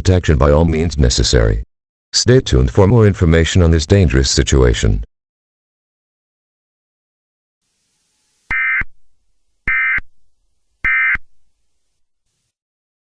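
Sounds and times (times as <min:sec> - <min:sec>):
two-tone digital data bursts: 0:08.5 - 0:08.9, 0:09.7 - 0:10.0, 0:10.8 - 0:11.2.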